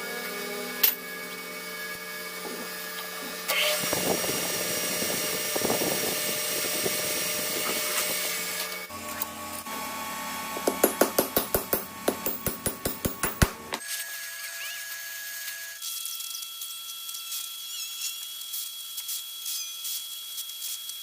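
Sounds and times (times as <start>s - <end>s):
metal cutting with high tones: 13.7s - 21.0s.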